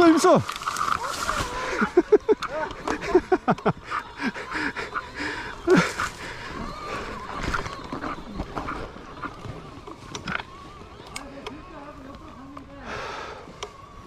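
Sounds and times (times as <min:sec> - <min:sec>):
person panting and grunting: 0:01.4 - 0:07.2.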